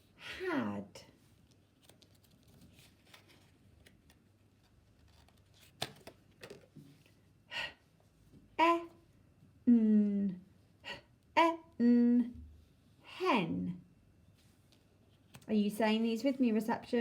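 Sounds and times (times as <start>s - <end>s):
woman saying letter sounds: 0.2s - 1.1s, 8.6s - 9.0s, 11.4s - 12.4s, 13.1s - 13.9s, 15.5s - 17.0s.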